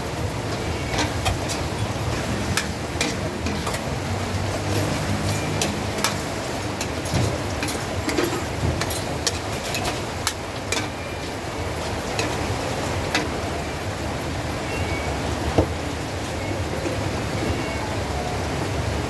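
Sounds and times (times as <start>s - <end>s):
utensils and dishes clinking: 0.0s - 14.9s
steady rushing background noise: 0.0s - 19.0s.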